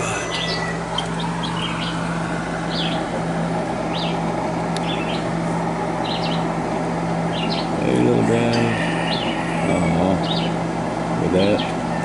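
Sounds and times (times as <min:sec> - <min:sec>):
high bird chirps: 0:00.0 - 0:03.1, 0:03.8 - 0:05.3, 0:06.0 - 0:06.5, 0:07.3 - 0:07.8, 0:08.6 - 0:10.6
air conditioner humming: 0:00.0 - 0:12.0.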